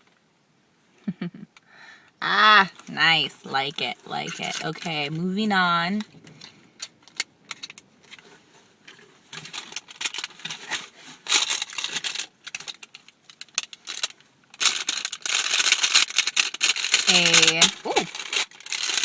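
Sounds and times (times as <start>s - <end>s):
packaging crinkling: 6.1s - 19.0s.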